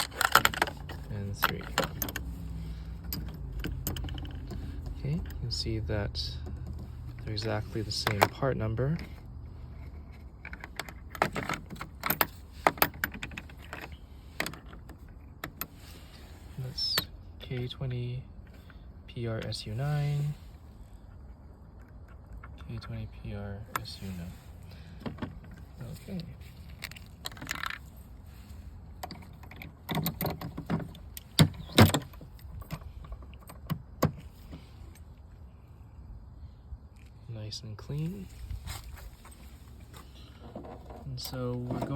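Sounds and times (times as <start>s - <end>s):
small hard parts clicking: 0.0s - 5.5s, 6.3s - 15.8s, 26.6s - 28.0s, 28.9s - 35.3s.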